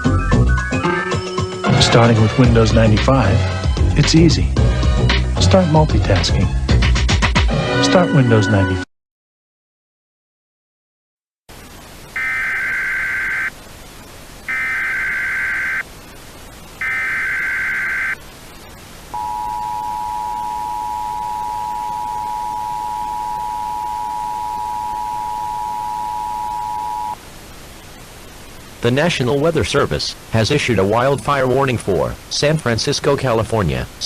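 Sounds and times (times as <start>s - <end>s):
constant hiss: 11.5s - 34.0s
data tone bursts: 12.1s - 13.5s, 14.5s - 15.9s, 16.8s - 18.2s, 19.1s - 27.2s
two-tone attention signal: 12.2s - 13.5s, 14.5s - 15.8s, 16.8s - 18.2s, 19.2s - 27.2s.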